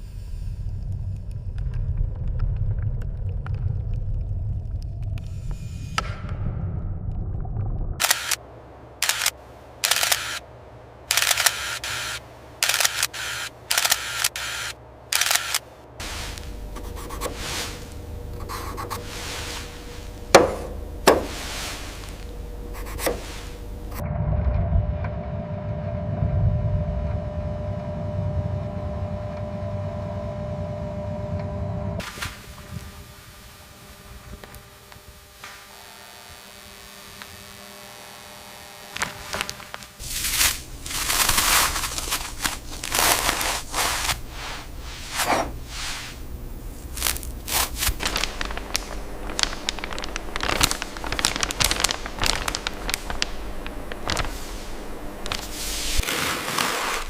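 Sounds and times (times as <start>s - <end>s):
machine hum with whine: 7.9s - 57.0s
sharp clicking bursts: 8.0s - 8.4s, 9.0s - 10.4s, 11.1s - 15.7s.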